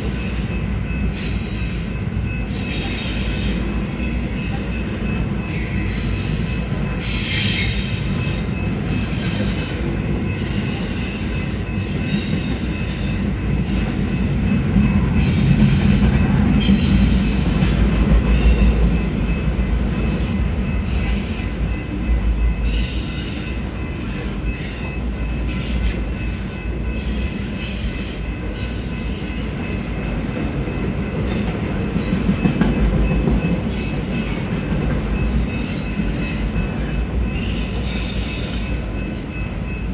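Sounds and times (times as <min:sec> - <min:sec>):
wheel squeals: 0:02.5 - 0:14.5, 0:15.2 - 0:17.8.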